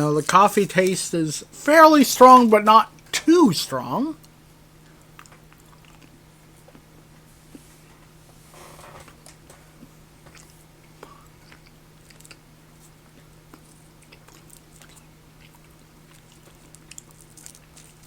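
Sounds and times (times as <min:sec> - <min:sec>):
person chewing: 0:10.3 - 0:18.0.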